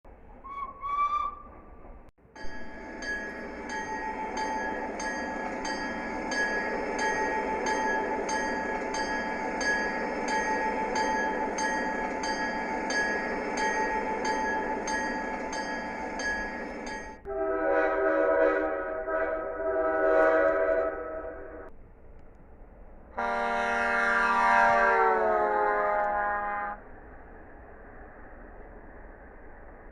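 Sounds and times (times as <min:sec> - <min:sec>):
train running: 0:00.2 - 0:29.9
whistle tone: 0:00.4 - 0:01.5
train bell ringing: 0:02.2 - 0:17.3.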